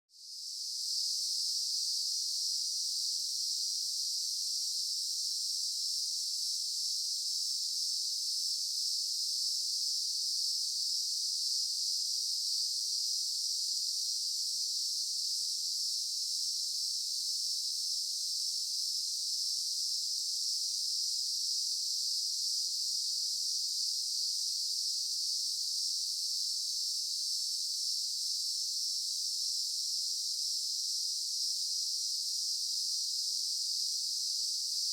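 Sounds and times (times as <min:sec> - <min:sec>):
insect chorus buzzing: 0:00.3 - 0:34.9.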